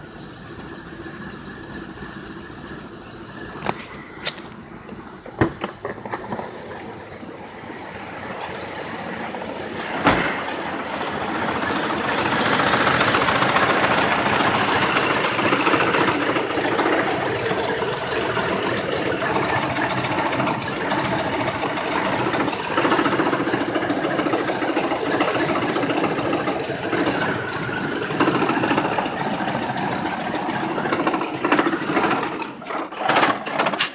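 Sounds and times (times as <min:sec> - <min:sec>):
pickup engine idling roughly: 0:00.0 - 0:33.9.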